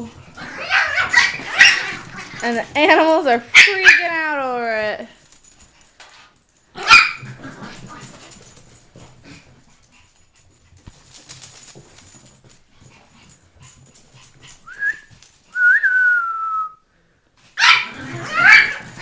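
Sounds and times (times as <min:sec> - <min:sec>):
dog whining: 0:17.7 - 0:19.0.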